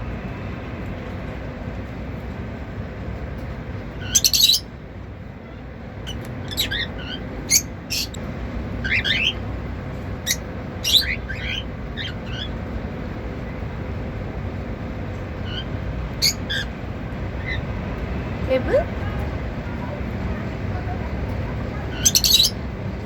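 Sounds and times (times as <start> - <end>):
low background hum: 0.0 - 23.0
cockatiels chirping and whistling: 4.0 - 4.7, 6.1 - 8.2, 8.8 - 9.4, 10.3 - 12.5, 15.5 - 16.7, 21.9 - 22.6.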